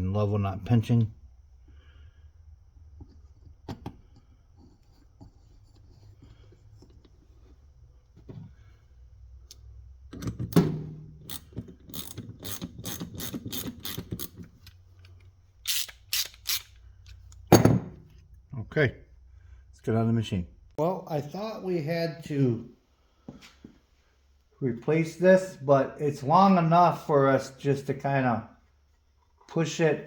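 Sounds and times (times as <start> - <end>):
ratchet wrench clicking: 11.2 - 14.8, 15.6 - 17.4.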